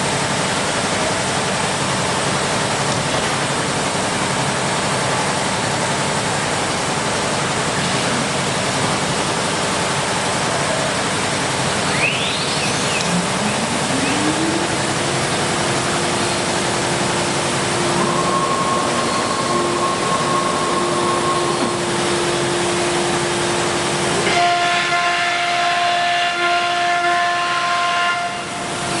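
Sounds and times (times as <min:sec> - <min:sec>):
loud rushing noise: 0:11.0 - 0:24.2.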